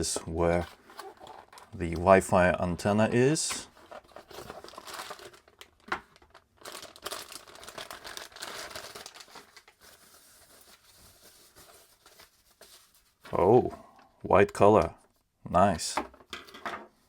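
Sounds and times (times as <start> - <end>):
packaging crinkling and rustling: 3.6 - 13.3.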